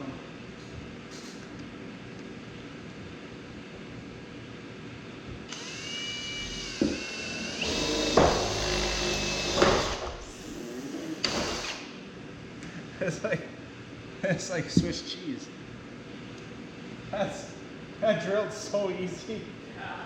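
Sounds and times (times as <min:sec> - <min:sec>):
power drill whining: 0:05.5 - 0:11.9.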